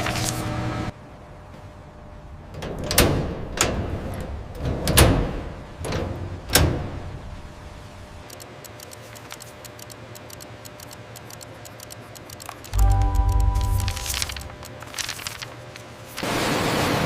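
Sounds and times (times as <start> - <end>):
faint scattered clicking: 8.2 - 15.4.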